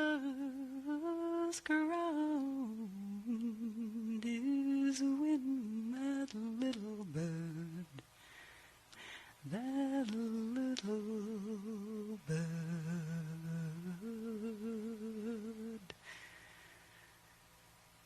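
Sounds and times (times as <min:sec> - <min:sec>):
person humming: 0:00.0 - 0:08.1, 0:09.4 - 0:16.2.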